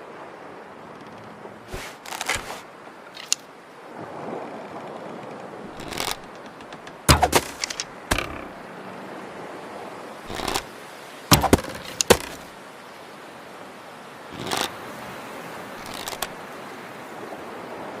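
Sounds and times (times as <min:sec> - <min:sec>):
bow and arrow shots: 0:05.8 - 0:08.5, 0:10.3 - 0:10.7, 0:11.3 - 0:12.5.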